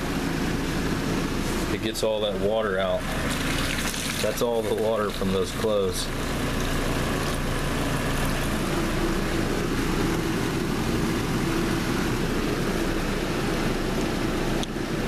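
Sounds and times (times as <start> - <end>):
washing machine spin motor: 0.0 - 15.0
water draining: 3.0 - 8.7.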